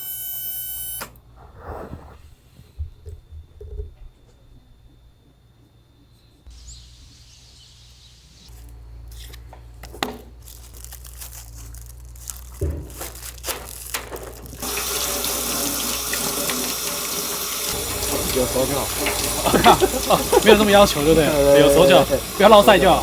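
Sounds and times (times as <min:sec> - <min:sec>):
knocks and clatter of handling: 0:12.4 - 0:14.6
water running into a sink: 0:14.6 - 0:23.0
tap turned on: 0:17.6 - 0:21.3.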